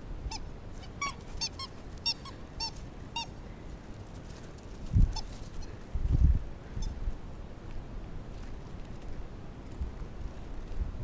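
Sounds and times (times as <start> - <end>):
rubber squeaky toy squeaking: 0.3 - 3.3.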